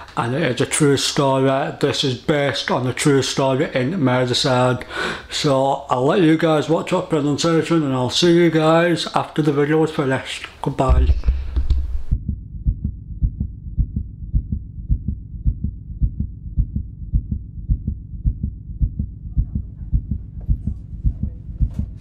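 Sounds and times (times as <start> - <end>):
heartbeat thuds: 10.9 - 22.0.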